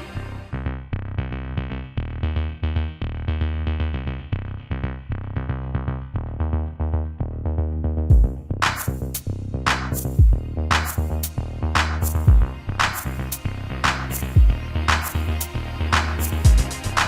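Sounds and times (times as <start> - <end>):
electronic music with beat: 0.0 - 0.7, 8.0 - 17.0
heavy bass hit: 8.1 - 16.8.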